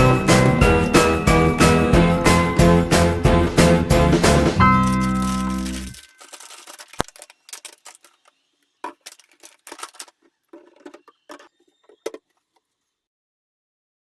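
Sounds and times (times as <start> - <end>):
objects being handled clicking: 4.8 - 12.6.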